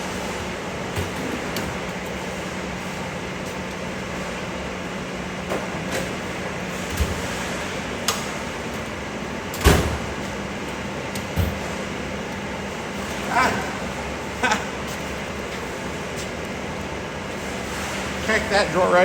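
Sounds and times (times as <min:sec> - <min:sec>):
steady low hum: 0:00.0 - 0:19.0
items knocking and clunking: 0:11.2 - 0:11.8.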